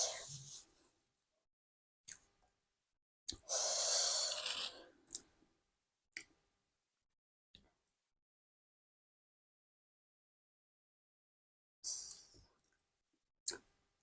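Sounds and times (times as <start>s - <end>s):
person exhaling through mouth: 3.4s - 5.0s.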